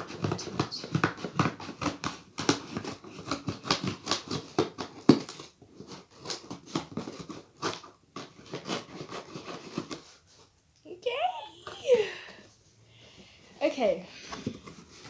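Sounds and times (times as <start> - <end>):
cardboard box being opened: 0.0 - 10.4.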